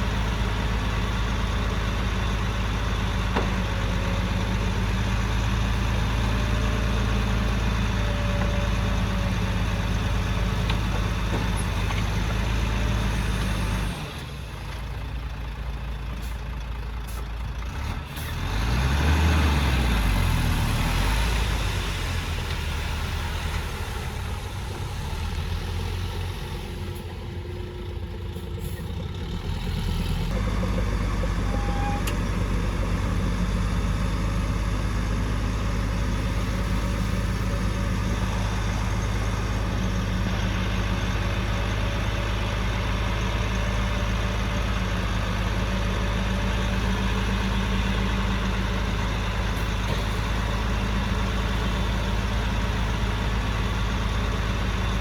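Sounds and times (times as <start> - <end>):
heavy machine engine revving: 17.7 - 55.0.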